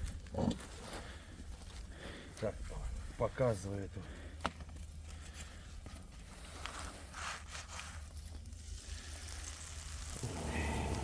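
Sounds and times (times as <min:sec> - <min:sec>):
soft rustles: 0:04.4 - 0:08.5
vegetables sizzling in a pan: 0:08.9 - 0:11.0.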